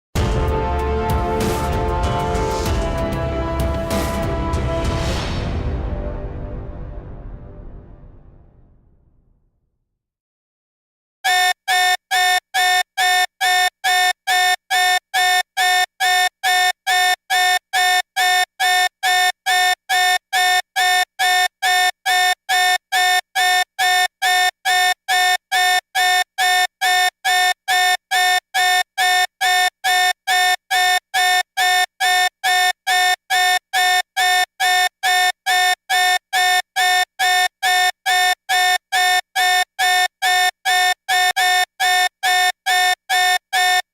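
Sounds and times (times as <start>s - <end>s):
electronic alarm beeping: 11.3s - 43.9s.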